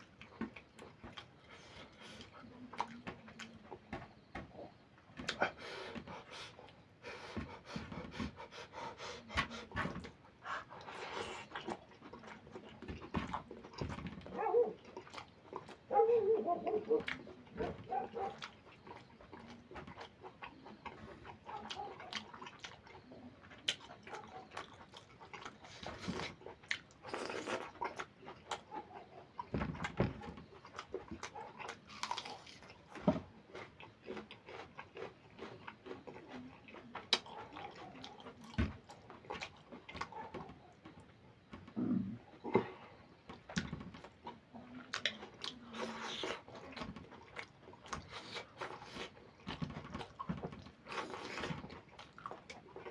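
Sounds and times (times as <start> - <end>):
chewing and wet mouth smacking: 0.0 - 3.9, 4.6 - 14.0, 14.7 - 16.0, 16.6 - 41.5, 42.3 - 52.9
food crunching: 9.2 - 40.2, 42.3 - 52.9.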